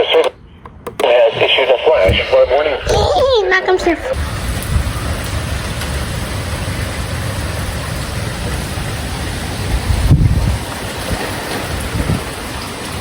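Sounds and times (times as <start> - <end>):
storm rain hiss: 1.4 - 13.0
low rumble: 1.8 - 10.6.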